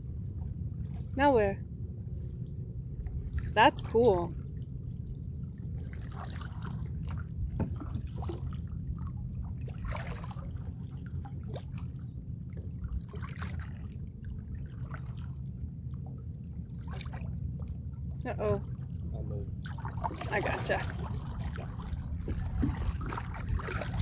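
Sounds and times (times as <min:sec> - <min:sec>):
steady low rumble: 0:00.0 - 0:24.0
paddle splashing in water: 0:05.8 - 0:11.9, 0:12.7 - 0:13.9, 0:16.8 - 0:17.4, 0:19.6 - 0:24.0.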